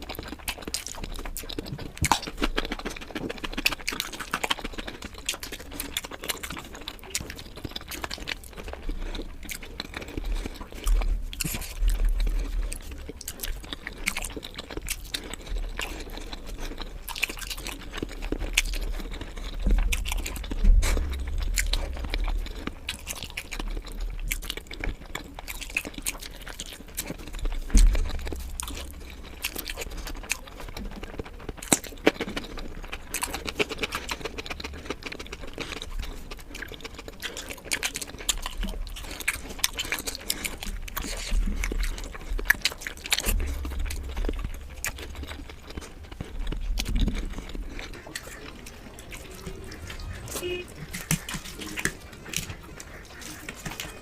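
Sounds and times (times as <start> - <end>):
chewing and crunching food: 0.0 - 54.0
dull low thumps: 18.7 - 23.5, 27.4 - 29.3, 42.9 - 47.8.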